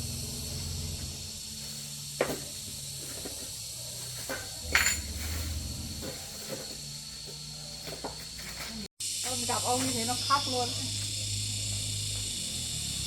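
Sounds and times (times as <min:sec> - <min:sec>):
low hum: 0:00.0 - 0:08.9
steady hiss: 0:00.0 - 0:13.0
metallic clinks and knocks: 0:04.2 - 0:05.3.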